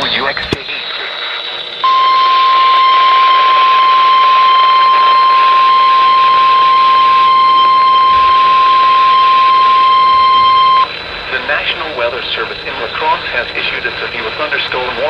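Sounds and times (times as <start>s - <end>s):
radio static hiss: 0.0s - 15.0s
steady alarm tone: 1.8s - 11.0s.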